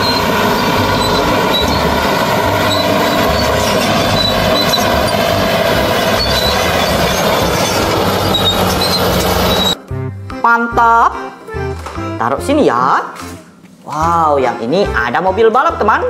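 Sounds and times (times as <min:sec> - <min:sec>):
short high tones: 0:00.0 - 0:09.8
toy engine sound effect: 0:00.0 - 0:09.8.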